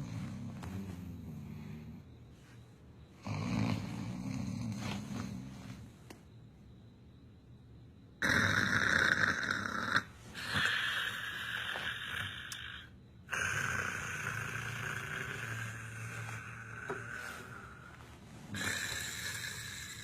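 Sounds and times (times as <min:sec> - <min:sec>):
person snoring comically: 0:03.2 - 0:05.5, 0:08.2 - 0:20.0.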